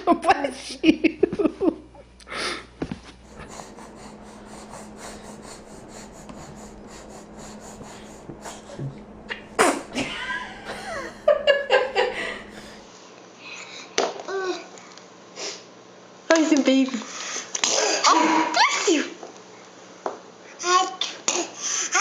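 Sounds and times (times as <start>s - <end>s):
baby sneezing: 9.6s - 9.9s, 17.6s - 18.9s.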